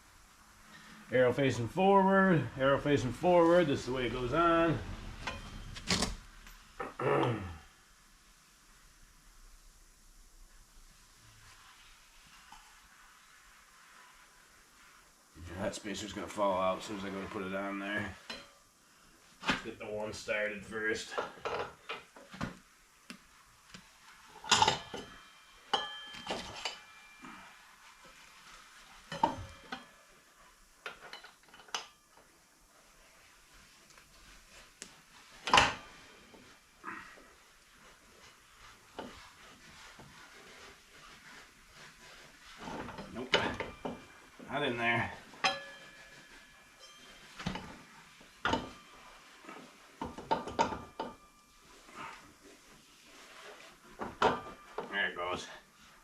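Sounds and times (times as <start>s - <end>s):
metal scraping: 0.7s - 7.0s
metal clinks and knocks: 5.2s - 6.7s, 24.3s - 27.2s, 29.1s - 30.1s, 45.2s - 49.3s, 50.0s - 51.5s.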